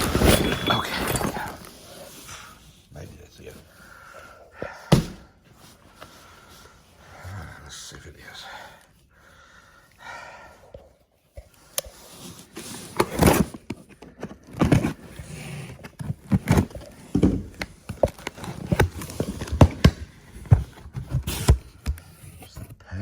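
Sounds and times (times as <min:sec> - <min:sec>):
rummaging through cardboard boxes: 0:00.0 - 0:07.1, 0:11.5 - 0:22.8.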